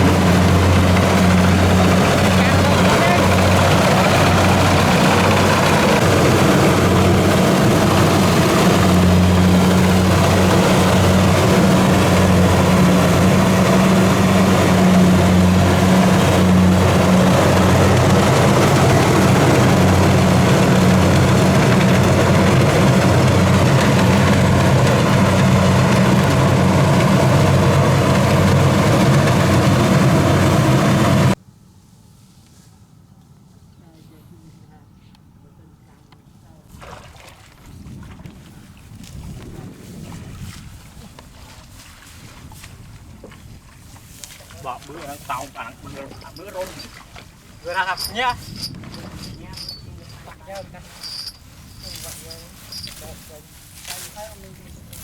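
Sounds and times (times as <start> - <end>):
diesel engine humming under load: 0.0 - 31.4.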